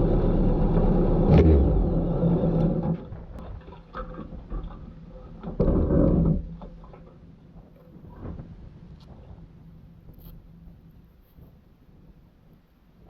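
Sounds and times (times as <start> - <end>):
motorcycle engine running: 0.0 - 3.1.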